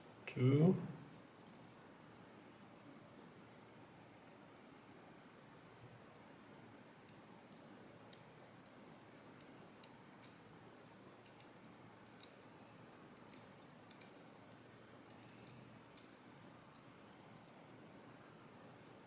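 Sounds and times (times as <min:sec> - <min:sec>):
metal lock parts clicking: 0:09.8 - 0:12.5, 0:13.2 - 0:16.2.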